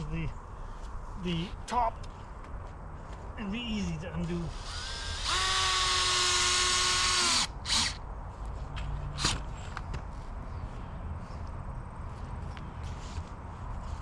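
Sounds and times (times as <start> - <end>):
power drill whirring: 4.5 - 8.0.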